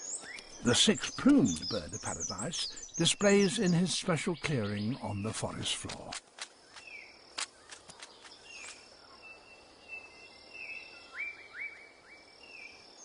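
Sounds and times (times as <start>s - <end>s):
bird calls: 0.0s - 13.0s
sharp clicks: 5.7s - 8.8s.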